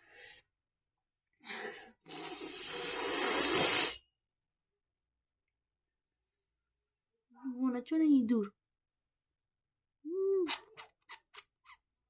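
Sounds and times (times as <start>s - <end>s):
hissing breath: 1.5s - 4.0s
woman breathing through nose: 1.5s - 4.0s.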